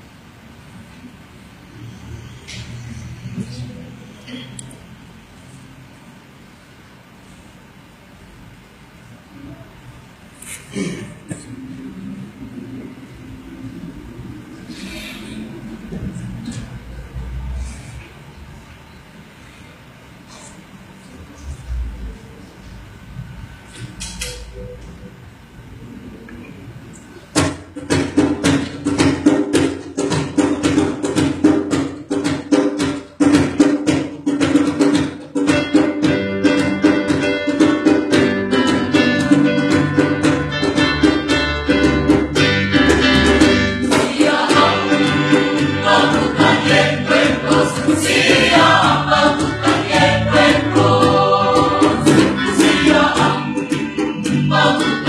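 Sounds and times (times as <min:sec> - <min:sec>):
instrumental accompaniment: 0:27.6 - 0:55.0
mixed choir singing: 0:43.6 - 0:55.0.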